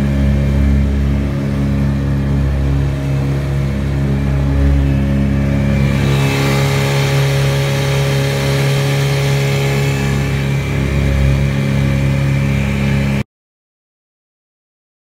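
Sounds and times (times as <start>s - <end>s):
outboard motor running: 0.0s - 13.2s.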